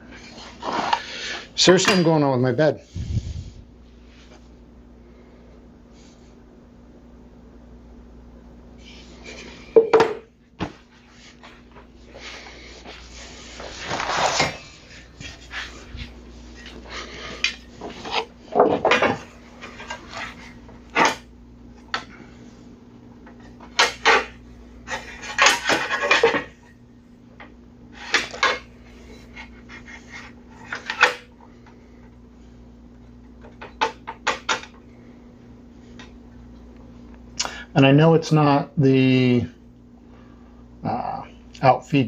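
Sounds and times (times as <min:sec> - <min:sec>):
wood and tools knocking on workbench: 0:09.8 - 0:10.8, 0:18.5 - 0:19.2.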